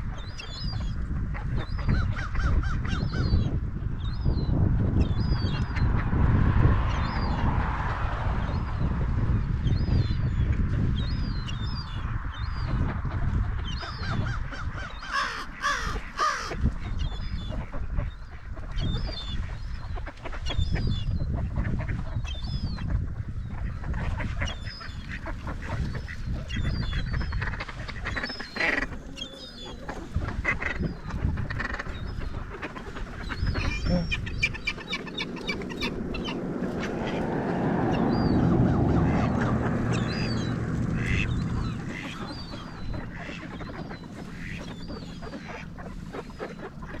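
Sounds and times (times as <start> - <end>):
ducks quacking: 12.7 - 19.2, 23.6 - 47.0
low rushing rumble: 30.8 - 47.0.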